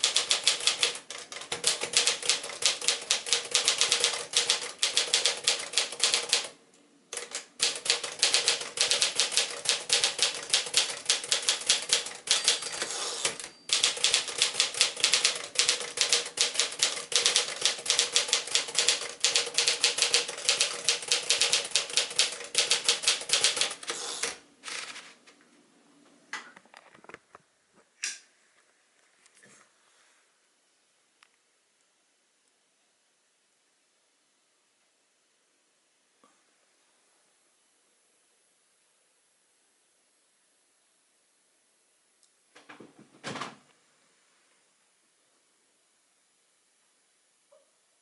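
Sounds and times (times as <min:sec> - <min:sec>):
typewriter keys clacking: 0:00.0 - 0:06.5, 0:07.2 - 0:25.0.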